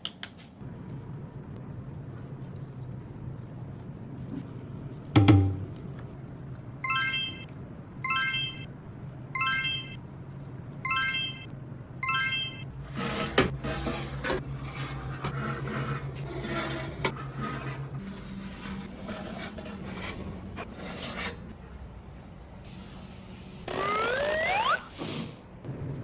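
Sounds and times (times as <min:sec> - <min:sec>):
electronic beeps: 0:06.8 - 0:07.5, 0:08.1 - 0:08.7, 0:09.4 - 0:10.0, 0:10.9 - 0:12.6
scraping and rubbing: 0:12.9 - 0:21.5.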